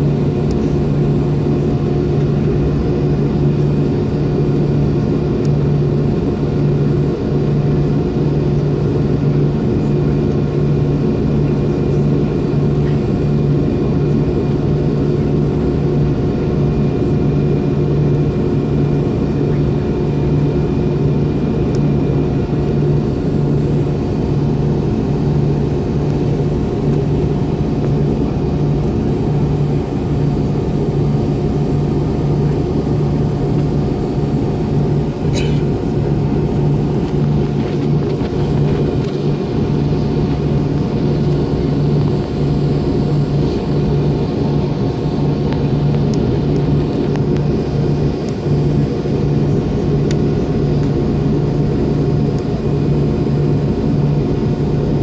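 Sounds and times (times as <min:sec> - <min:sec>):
jet engines droning: 0:00.0 - 0:55.0.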